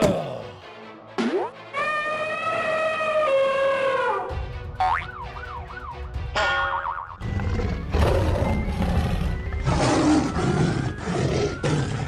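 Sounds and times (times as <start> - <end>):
background music: 0.0 - 12.0
cartoon boing tone: 4.8 - 5.2, 6.4 - 7.2.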